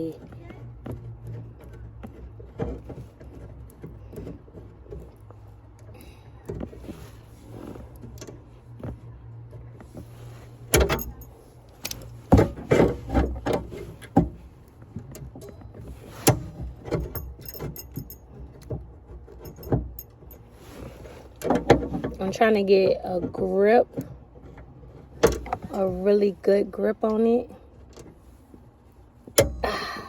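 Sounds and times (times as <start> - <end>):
car jack metal rattling: 10.6 - 26.1.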